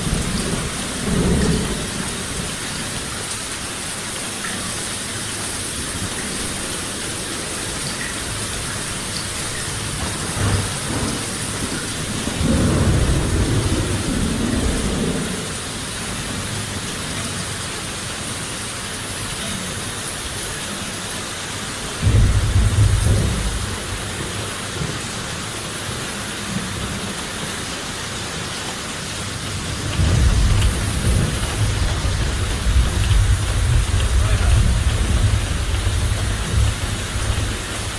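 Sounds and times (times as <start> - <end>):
low rolls of thunder: 0.0 - 3.0, 9.5 - 16.5, 22.0 - 25.2, 29.5 - 37.9
heavy rain: 0.0 - 37.9.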